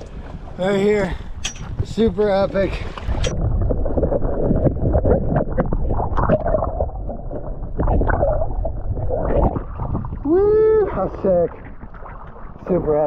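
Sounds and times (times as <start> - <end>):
water splashing against boat: 0.0 - 13.0.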